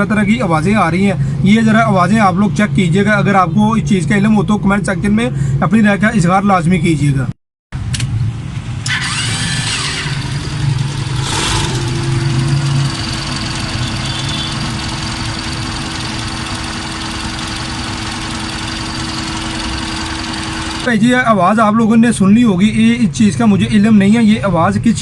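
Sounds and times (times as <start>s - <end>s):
engine knocking: 9.0s - 21.3s
steady hum: 9.1s - 21.5s.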